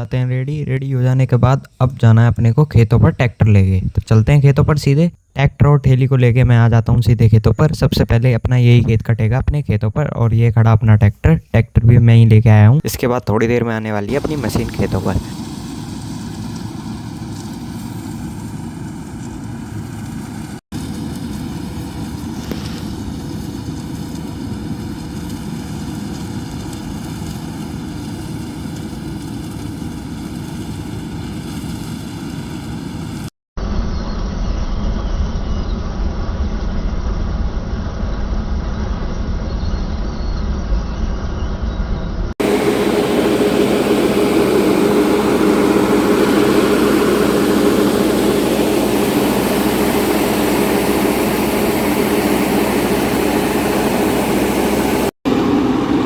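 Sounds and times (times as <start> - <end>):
farm machinery engines running: 12.9 - 33.3, 42.4 - 56.0.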